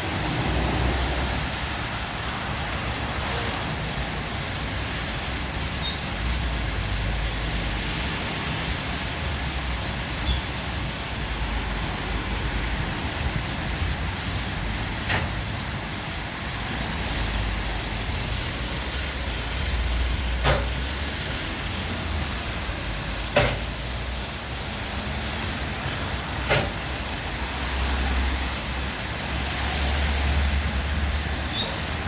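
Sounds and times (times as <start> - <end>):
water spray hissing: 16.6 - 32.0.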